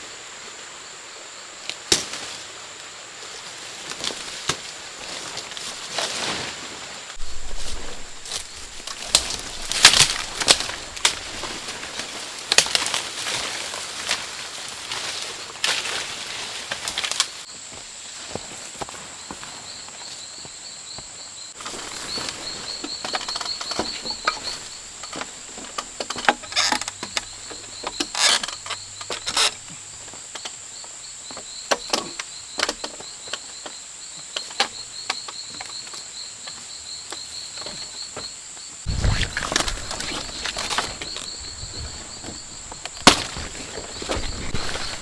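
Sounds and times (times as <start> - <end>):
insects droning: 0.0 - 45.0
rustling: 5.0 - 17.4, 38.9 - 45.0
pulsing insect chirp: 7.2 - 12.2, 19.7 - 45.0.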